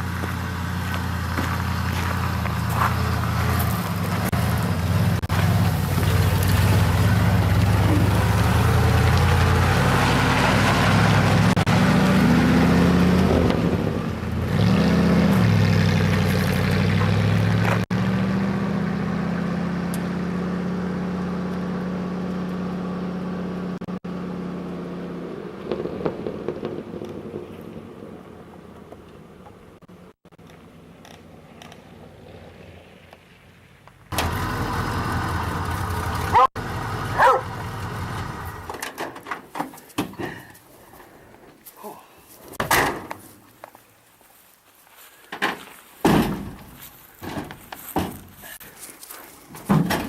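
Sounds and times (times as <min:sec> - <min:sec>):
vehicle engine running: 0:00.0 - 0:38.8.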